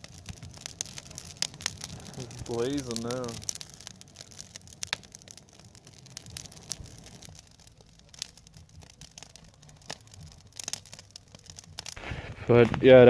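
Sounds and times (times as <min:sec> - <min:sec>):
campfire crackling and popping: 0:00.0 - 0:13.0.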